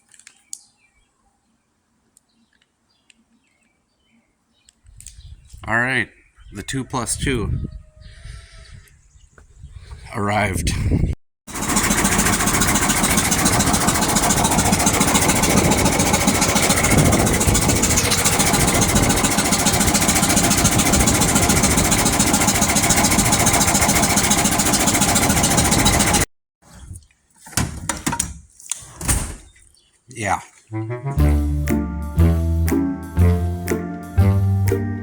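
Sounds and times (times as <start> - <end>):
tractor diesel engine running: 11.5 - 26.3.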